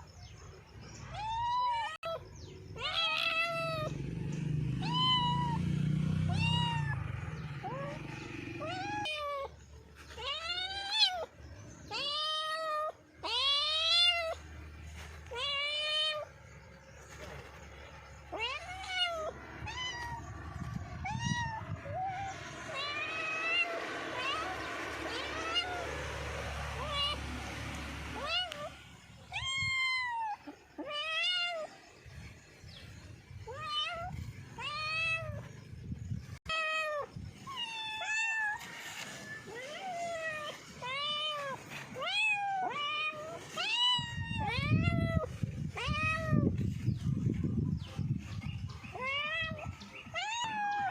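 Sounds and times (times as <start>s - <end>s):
cat meowing: 1.0s - 3.9s, 4.8s - 14.4s, 15.2s - 16.4s, 18.2s - 25.9s, 26.8s - 27.2s, 28.1s - 31.8s, 33.3s - 35.6s, 36.4s - 47.0s, 48.9s - 50.9s.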